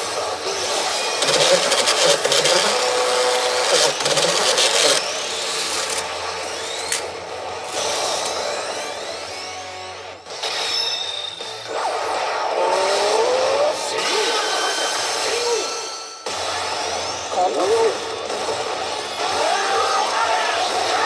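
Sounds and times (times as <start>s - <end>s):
pachinko machine electronic clatter: 0.8s - 7.1s.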